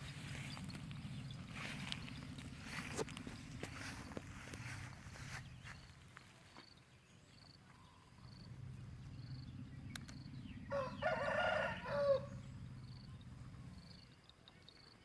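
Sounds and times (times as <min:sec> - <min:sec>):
rooster crowing: 0:10.6 - 0:12.5.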